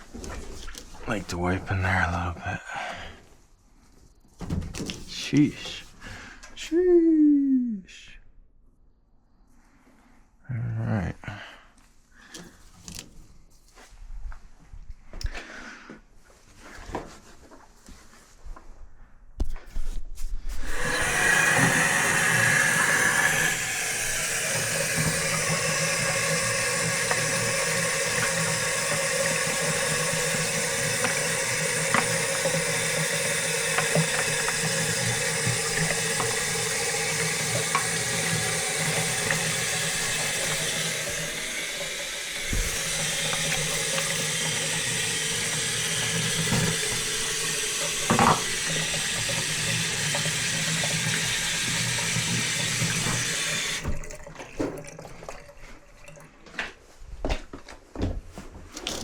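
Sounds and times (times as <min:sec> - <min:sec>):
water running: 0:00.0 - 0:02.5, 0:04.8 - 0:06.0, 0:20.6 - 0:57.0.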